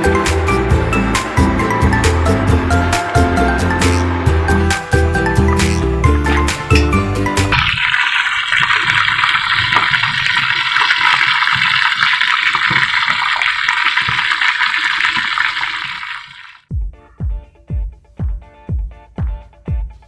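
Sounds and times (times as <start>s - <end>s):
meat deep-frying in oil: 7.5s - 16.6s.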